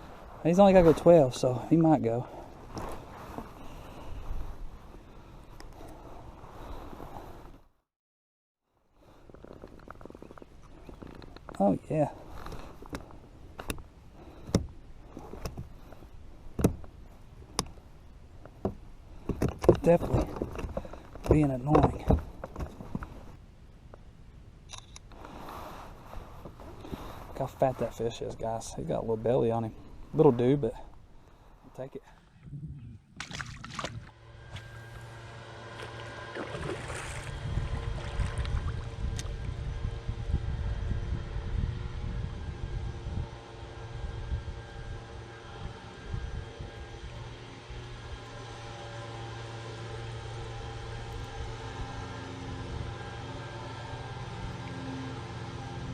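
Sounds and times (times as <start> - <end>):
motorboat engine droning: 0.0 - 7.7, 25.1 - 28.1, 28.8 - 31.6, 33.3 - 55.9.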